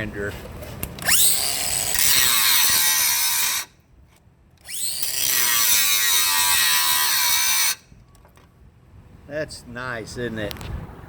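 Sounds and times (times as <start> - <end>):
electric angle grinder whining: 1.0 - 3.7, 4.6 - 7.8.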